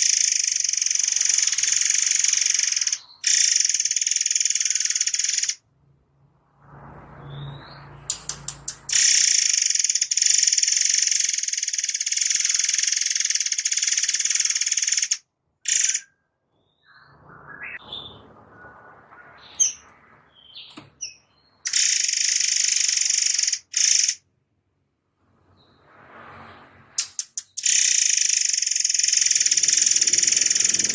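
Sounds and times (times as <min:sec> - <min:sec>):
bird chirps: 0:00.0 - 0:05.6, 0:07.2 - 0:24.2, 0:27.0 - 0:30.9
songbird harsh trills: 0:00.0 - 0:05.6, 0:08.7 - 0:16.1, 0:20.4 - 0:24.2, 0:27.0 - 0:30.9.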